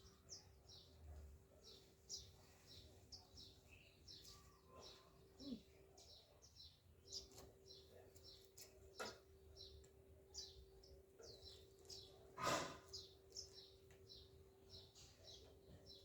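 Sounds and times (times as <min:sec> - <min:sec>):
small birds chirping: 0:00.0 - 0:16.0.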